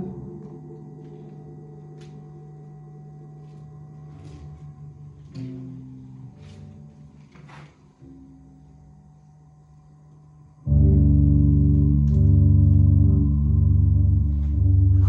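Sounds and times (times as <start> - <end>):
quiet instrumental music: 0.0 - 15.0.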